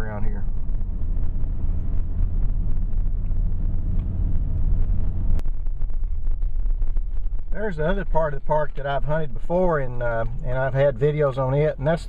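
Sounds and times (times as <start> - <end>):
truck engine rumbling: 0.0 - 12.0.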